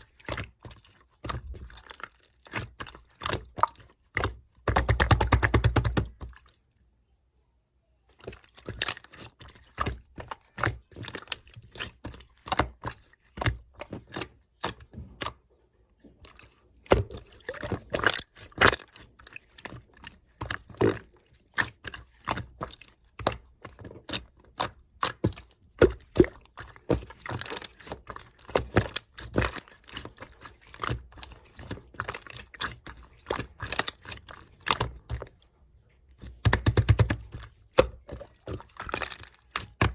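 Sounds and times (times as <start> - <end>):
slime clicking and popping: 4.3 - 6.2, 36.3 - 39.9.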